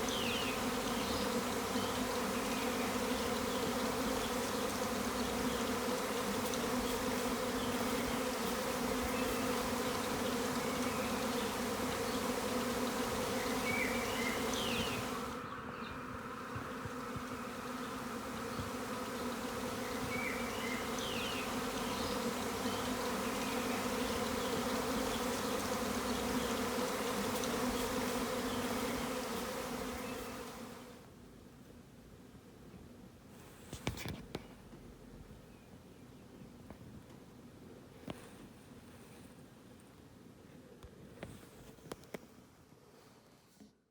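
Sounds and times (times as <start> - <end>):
bees buzzing: 0.0 - 31.0.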